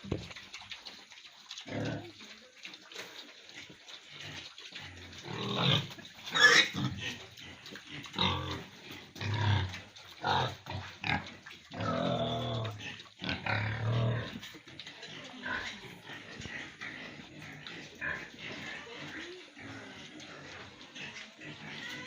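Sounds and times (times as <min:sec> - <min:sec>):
pigs grunting: 0:00.0 - 0:22.0
pig squealing: 0:05.3 - 0:08.6, 0:17.9 - 0:22.0.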